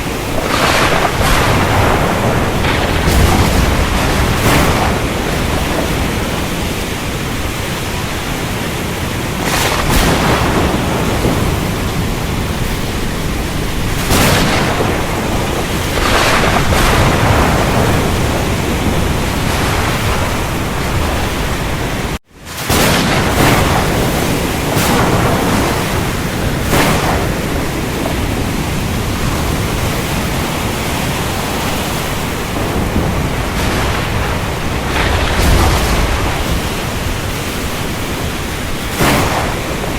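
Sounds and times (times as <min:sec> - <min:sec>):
steady rain: 0:00.0 - 0:39.9
thunder rumbling: 0:00.0 - 0:39.9.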